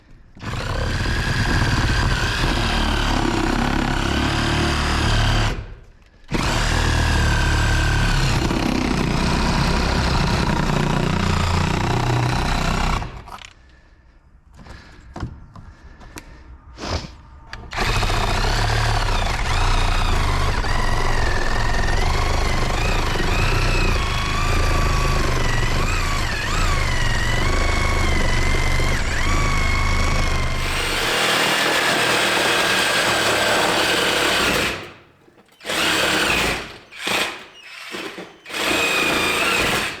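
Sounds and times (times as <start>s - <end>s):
reciprocating saw cutting: 17.7s - 40.0s.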